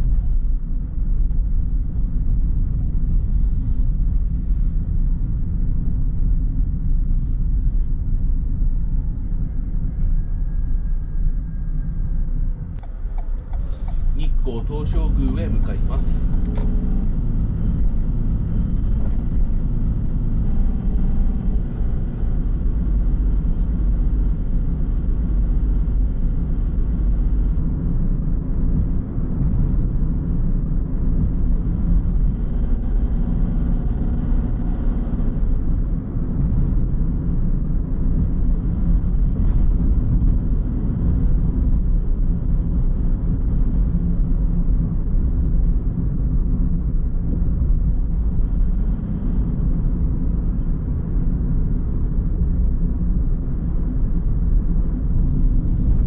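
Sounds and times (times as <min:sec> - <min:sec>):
car engine rumble: 0:00.0 - 0:56.0
tyres on road: 0:12.8 - 0:24.1.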